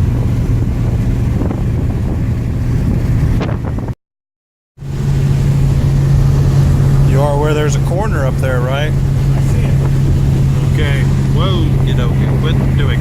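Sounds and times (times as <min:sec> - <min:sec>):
road and wind noise: 0:00.0 - 0:04.0, 0:04.8 - 0:13.0
car engine droning: 0:04.8 - 0:13.0.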